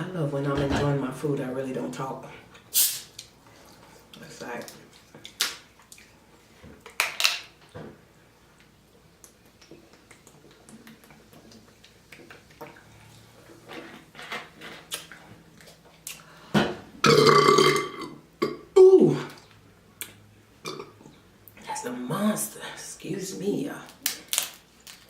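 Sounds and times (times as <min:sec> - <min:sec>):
clatter of dishes: 0:00.5 - 0:01.0
chewing and lip smacking: 0:08.6 - 0:12.8
loud burp: 0:17.0 - 0:19.0, 0:20.6 - 0:21.0.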